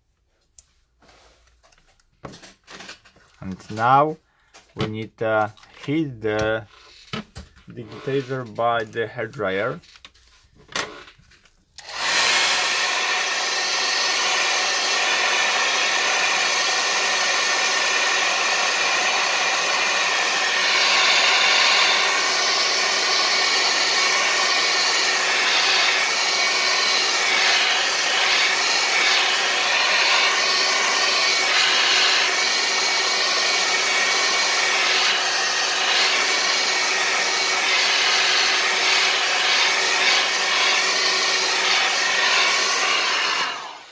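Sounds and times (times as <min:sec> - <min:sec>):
hair dryer running: 0:11.8 - 0:43.9.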